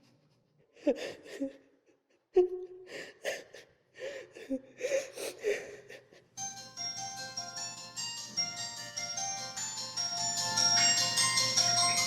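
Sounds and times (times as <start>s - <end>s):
gasping breaths: 2.9s - 6.3s.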